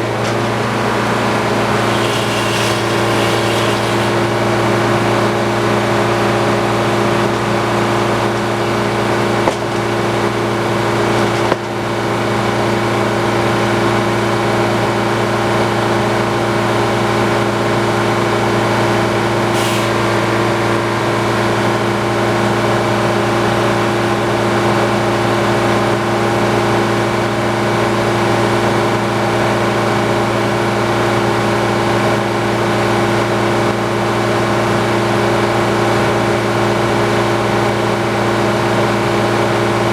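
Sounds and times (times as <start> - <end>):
sawmill mechanical hum: 0.0 - 39.9
sharp knocks: 9.4 - 10.2.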